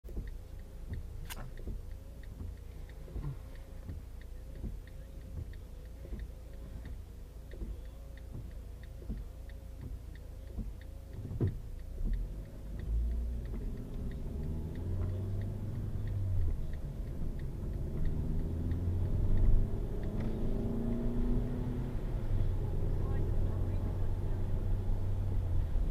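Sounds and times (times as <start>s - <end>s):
car engine rumble: 0.0s - 25.9s
light ticking: 0.1s - 25.9s.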